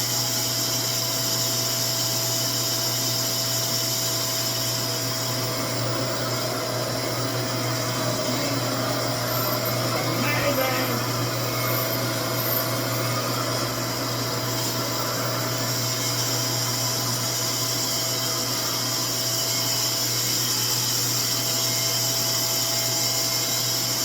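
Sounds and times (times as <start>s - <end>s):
hair dryer motor whining: 0.0s - 24.0s.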